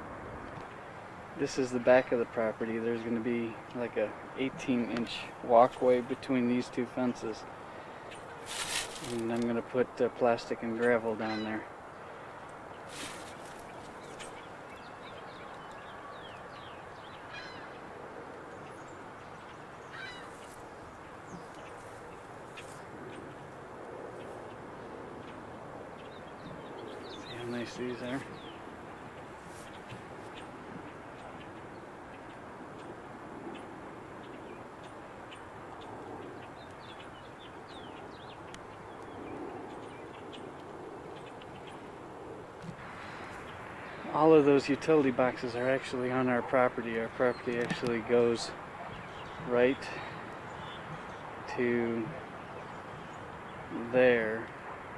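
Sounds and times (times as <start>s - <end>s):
birds chirping and calling: 10.6s - 11.6s, 12.7s - 23.5s, 26.0s - 32.9s, 42.6s - 54.5s.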